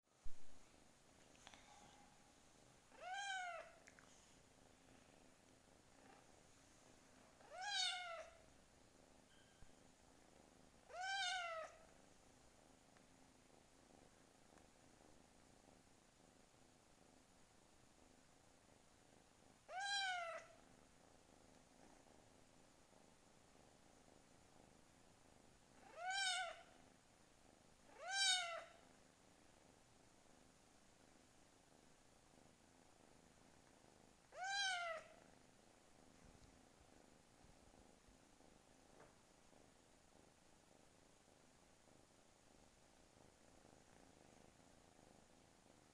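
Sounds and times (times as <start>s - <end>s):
kitten meowing: 3.0s - 3.7s, 7.5s - 8.3s, 10.9s - 11.7s, 19.7s - 20.4s, 25.9s - 26.6s, 28.0s - 28.7s, 34.4s - 35.1s.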